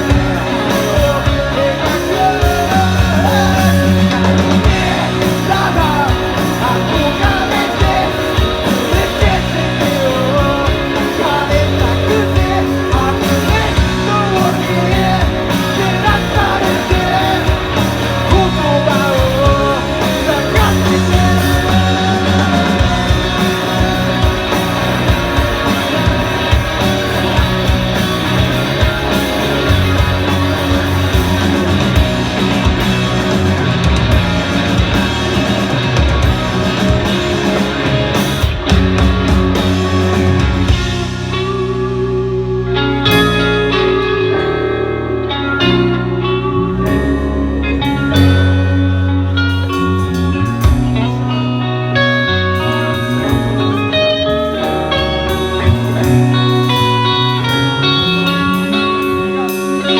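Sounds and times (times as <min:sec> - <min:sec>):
steady drum beat: 0:00.0 - 0:41.9
electric guitars: 0:00.0 - 0:59.9.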